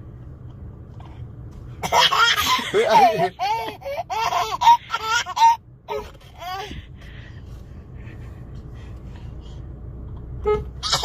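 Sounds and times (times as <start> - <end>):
low steady rumble: 0.0 - 11.0
car horn toot: 10.4 - 10.9.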